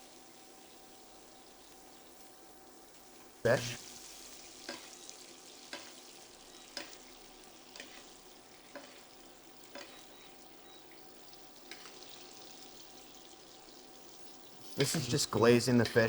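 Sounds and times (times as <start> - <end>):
fish sizzling in a pan: 0.0 - 16.0
spoon clicking on pan: 6.7 - 7.0, 9.7 - 10.0.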